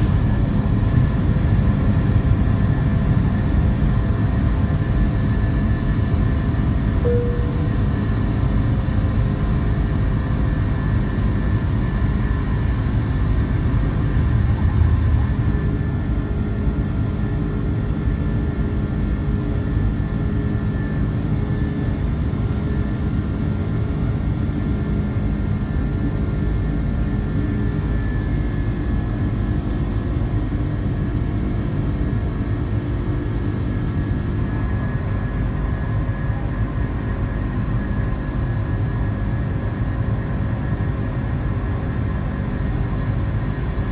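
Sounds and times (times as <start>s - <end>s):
jet engines rumbling: 0.0s - 17.2s, 34.0s - 43.9s
jet engine whine: 0.0s - 43.9s.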